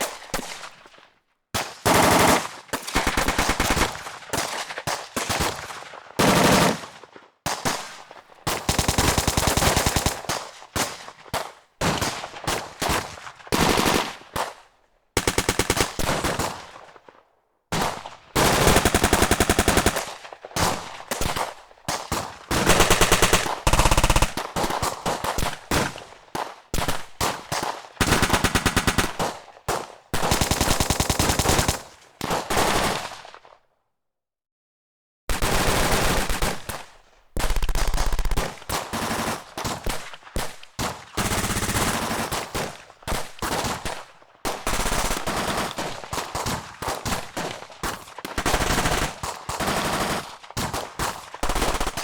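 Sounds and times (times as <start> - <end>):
automatic gunfire bursts: 1.8 - 4.6, 5.3 - 6.9, 8.5 - 11.0, 15.2 - 16.7, 17.8 - 33.2, 35.3 - 52.0.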